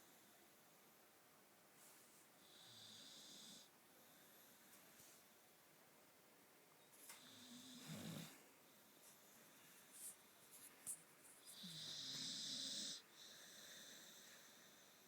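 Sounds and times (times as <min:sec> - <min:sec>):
dog snoring: 0:02.4 - 0:03.7, 0:07.2 - 0:08.4, 0:11.5 - 0:15.0.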